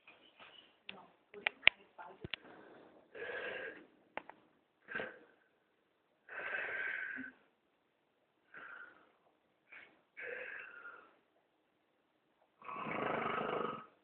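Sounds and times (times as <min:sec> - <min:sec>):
breath noises: 0:02.2 - 0:03.9
man snoring loudly: 0:12.6 - 0:13.9.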